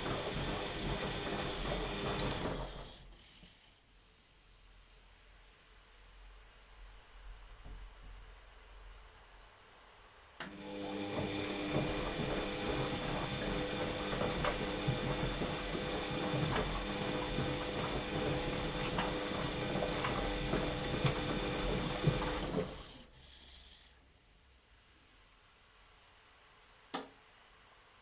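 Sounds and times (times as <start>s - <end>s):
washing machine motor humming: 0.0s - 3.1s, 10.4s - 23.2s.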